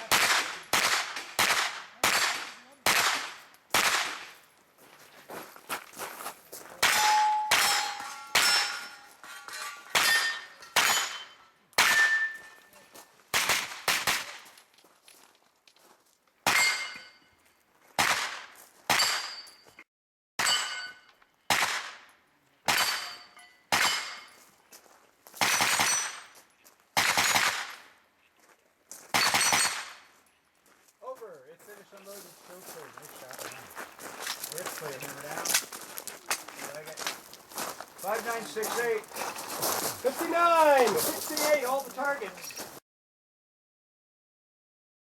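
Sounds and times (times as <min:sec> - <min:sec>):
carbine firing single shots: 0:00.0 - 0:04.4, 0:13.3 - 0:14.4, 0:21.5 - 0:22.0, 0:25.4 - 0:26.3, 0:27.0 - 0:27.9, 0:29.1 - 0:30.1
bullets clanging off steel targets: 0:06.8 - 0:13.0, 0:16.5 - 0:17.4, 0:18.9 - 0:19.8, 0:20.4 - 0:21.3, 0:22.7 - 0:24.4, 0:25.4 - 0:26.4, 0:29.2 - 0:30.1.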